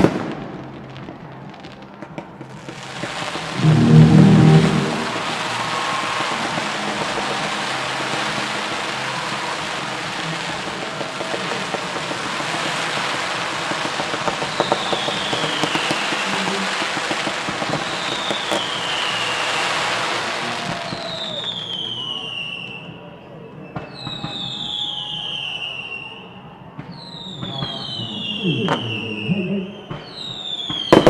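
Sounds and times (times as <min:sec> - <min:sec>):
fireworks crackling: 0:00.0 - 0:22.3, 0:29.9 - 0:31.0
fireworks whistling: 0:02.9 - 0:23.0, 0:26.9 - 0:31.0
fireworks deep boom: 0:03.6 - 0:06.2.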